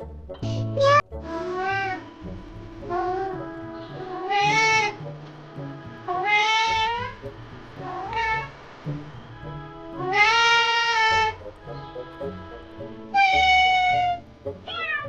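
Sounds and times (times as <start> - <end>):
background music: 0.0 - 15.0
cat meowing: 13.2 - 15.0.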